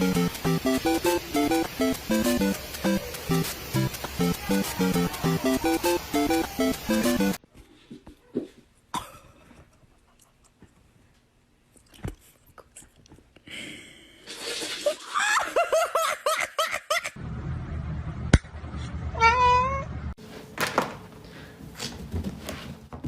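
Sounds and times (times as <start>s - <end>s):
cat chirping meows: 19.2s - 19.9s.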